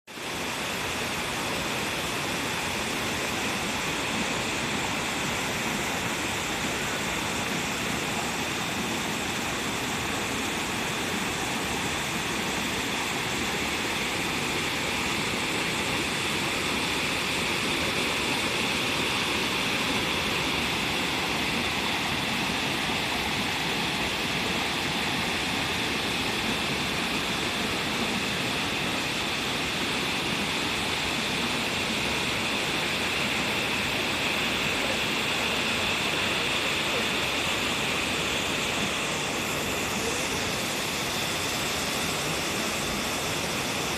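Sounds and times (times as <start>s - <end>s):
mountain stream rushing: 0.1s - 43.9s.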